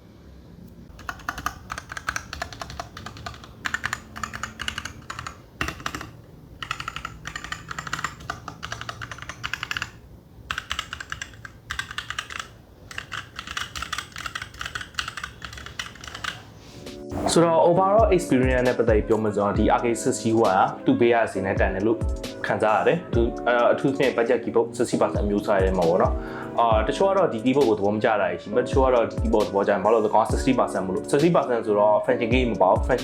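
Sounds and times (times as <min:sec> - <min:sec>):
fast typing on mechanical keyboard: 0:00.9 - 0:16.6.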